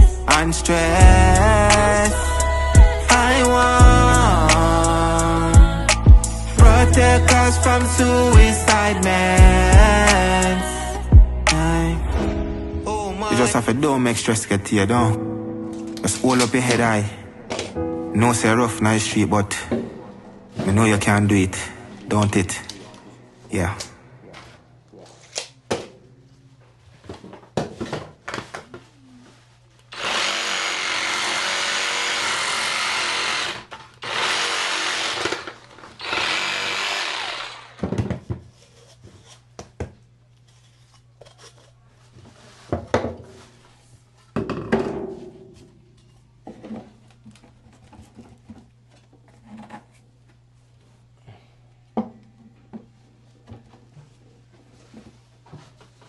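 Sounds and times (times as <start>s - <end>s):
power tool running: 29.9s - 37.9s.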